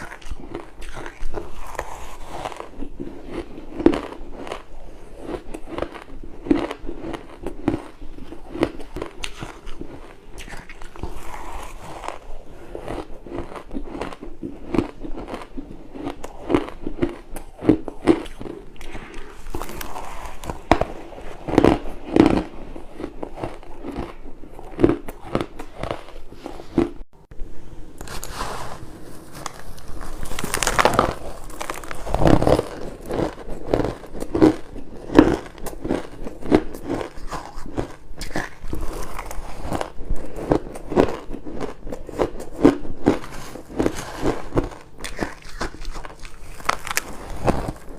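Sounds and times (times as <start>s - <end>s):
crunching ice bites: 43.9s - 47.8s.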